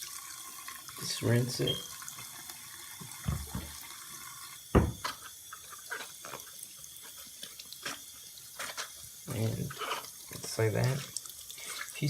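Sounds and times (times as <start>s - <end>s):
tap water running in a sink: 0.0s - 12.0s
hollow knocks: 4.8s - 5.0s.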